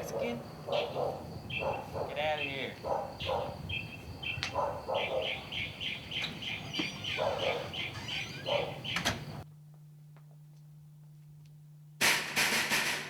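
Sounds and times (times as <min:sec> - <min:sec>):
bird chirping: 0:00.0 - 0:09.4
lower rough bird sounds: 0:00.0 - 0:09.4.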